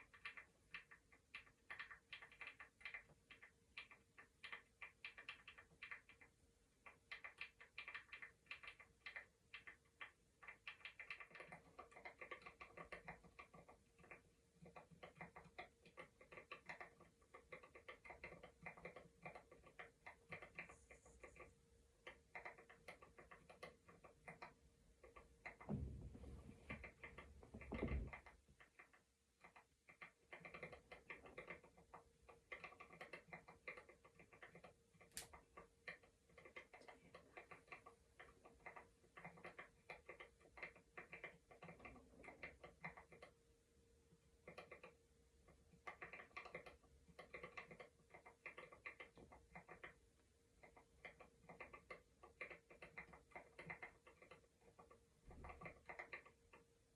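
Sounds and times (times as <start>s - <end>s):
faint steady hum: 0.0s - 56.9s
rapid clicking and scratching: 0.0s - 56.9s
low thumps: 25.6s - 26.8s.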